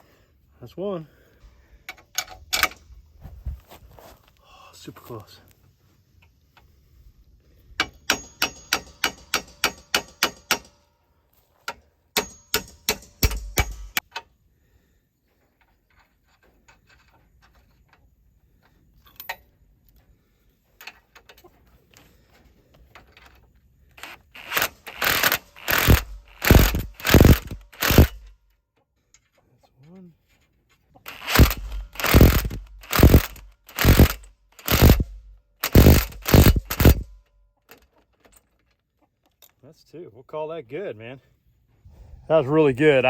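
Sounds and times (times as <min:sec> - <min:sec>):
ratchet wrench clicking: 0:12.2 - 0:14.0, 0:24.0 - 0:28.3, 0:31.1 - 0:37.2
heavy metal strokes: 0:24.4 - 0:28.3, 0:31.1 - 0:37.2.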